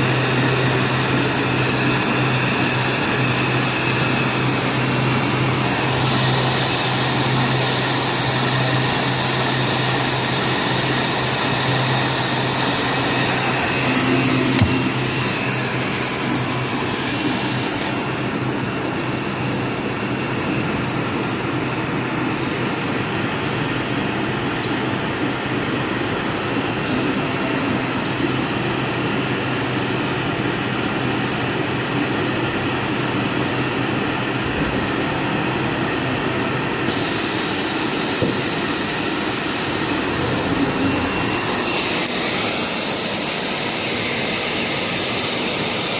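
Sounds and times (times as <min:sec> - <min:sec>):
cnc router running: 0:00.0 - 0:45.9.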